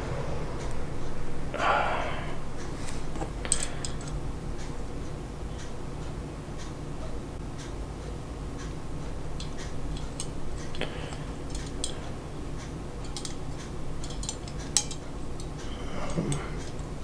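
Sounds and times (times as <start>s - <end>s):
low background hum: 0.0s - 17.0s
small plastic parts clicking: 13.0s - 17.0s.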